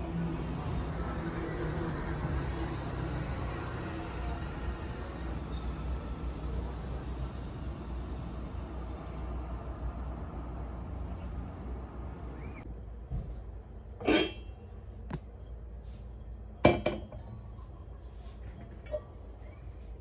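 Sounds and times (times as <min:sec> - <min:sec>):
tableware clinks: 0:14.0 - 0:14.8, 0:16.6 - 0:17.2.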